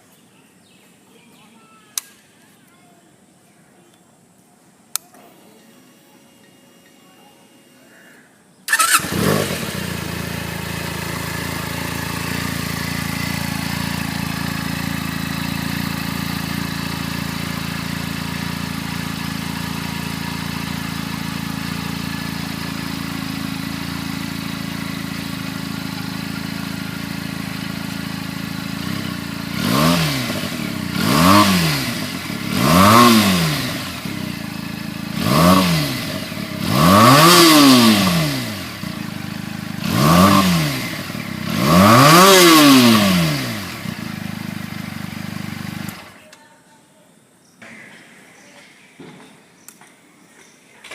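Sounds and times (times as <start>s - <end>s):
motorcycle engine idling and revving: 8.7s - 46.2s.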